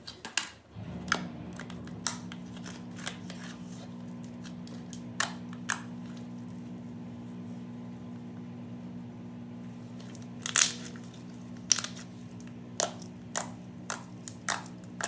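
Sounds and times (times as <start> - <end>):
steady low hum: 0.7 - 15.0
slime popping and crackling: 10.4 - 12.1, 12.8 - 15.0.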